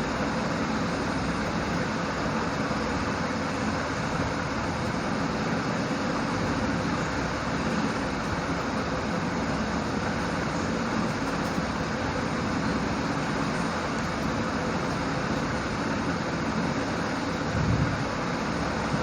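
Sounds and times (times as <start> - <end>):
steady rushing noise: 9.6 - 19.0.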